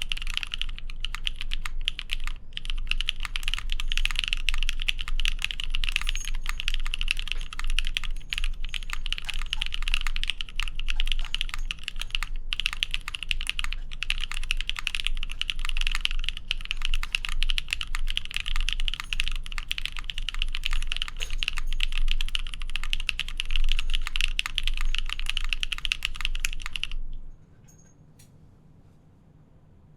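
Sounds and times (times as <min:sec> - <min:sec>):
typing on mechanical keyboard: 0:00.0 - 0:27.0.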